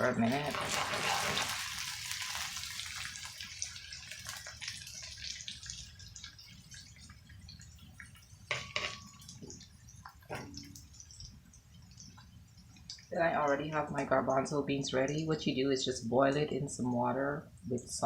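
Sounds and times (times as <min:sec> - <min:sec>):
onions sizzling in hot oil: 0:00.0 - 0:13.1.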